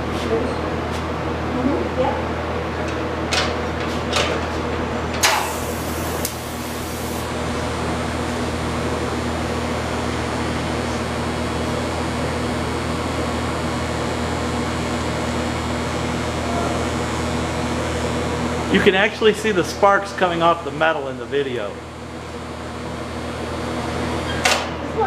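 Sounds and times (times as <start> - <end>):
welder hiss and hum: 5.2 - 7.3.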